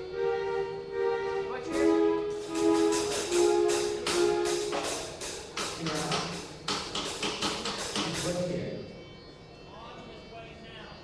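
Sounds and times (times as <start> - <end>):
held pitched notes: 0.0 - 6.7
percussion beat: 1.6 - 8.5.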